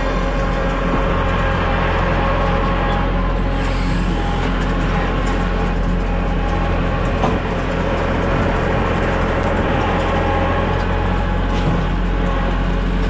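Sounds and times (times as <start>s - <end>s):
heavy engine droning: 0.0s - 13.0s.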